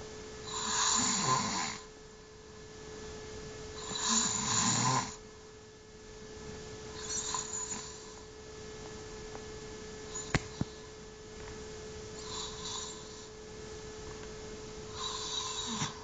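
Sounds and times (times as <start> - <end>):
steady electrical hum: 0.0 - 16.0
man snoring: 0.4 - 1.9, 3.8 - 5.2, 7.0 - 8.2, 12.2 - 13.3, 14.9 - 16.0.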